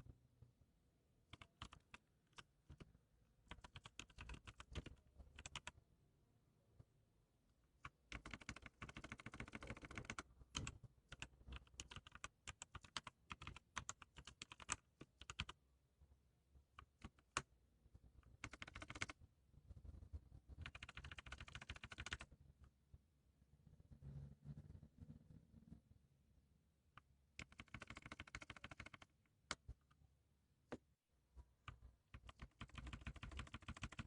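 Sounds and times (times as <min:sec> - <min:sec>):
computer keyboard typing: 0:01.3 - 0:02.9, 0:03.5 - 0:05.8, 0:07.8 - 0:15.6, 0:16.8 - 0:17.5, 0:18.4 - 0:19.2, 0:20.6 - 0:22.3, 0:27.4 - 0:29.7, 0:31.7 - 0:34.0.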